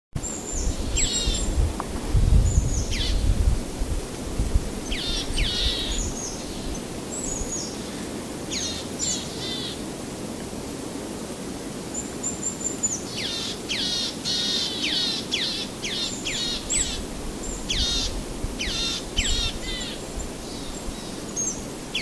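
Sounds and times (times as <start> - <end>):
steady hiss: 0.2 - 22.0
birds calling: 4.8 - 9.8, 13.1 - 22.0.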